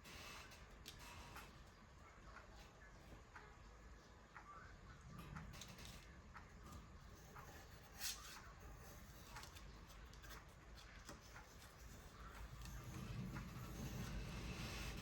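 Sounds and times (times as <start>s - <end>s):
low room hum: 0.0s - 15.0s.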